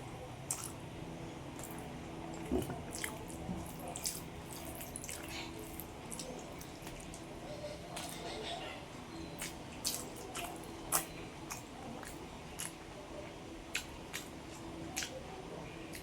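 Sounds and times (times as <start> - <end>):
wet chewing and lip-smacking: 0.5 - 0.8, 9.4 - 12.8, 13.7 - 15.2.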